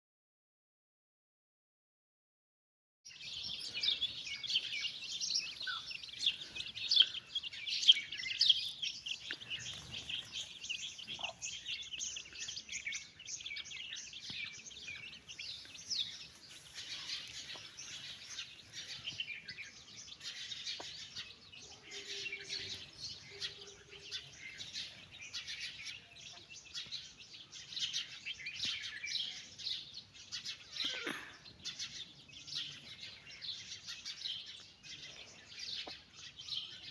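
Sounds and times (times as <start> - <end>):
chicks peeping: 3.2 - 28.9.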